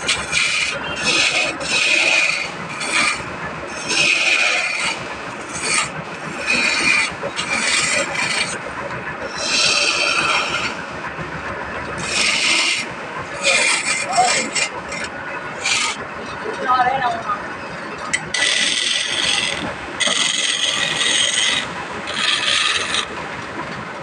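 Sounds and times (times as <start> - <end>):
hand tool scraping wood: 0.0 - 8.6, 9.2 - 10.8, 12.0 - 16.0, 18.3 - 23.2.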